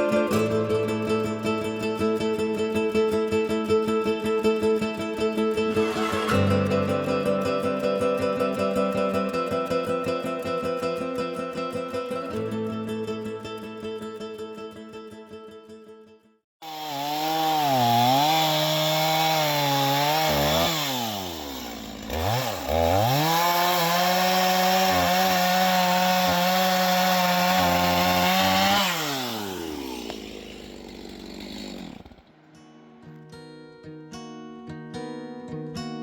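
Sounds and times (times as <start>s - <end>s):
small engine revving: 16.6s - 32.2s.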